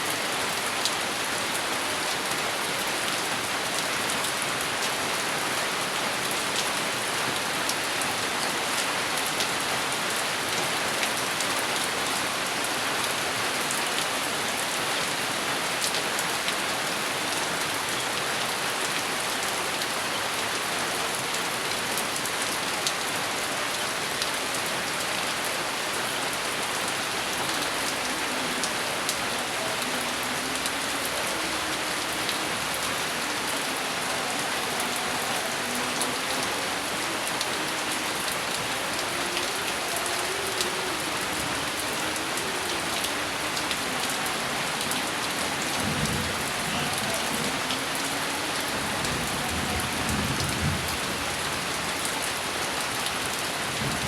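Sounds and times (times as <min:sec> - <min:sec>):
steady rain pouring: 0:00.0 - 0:54.0.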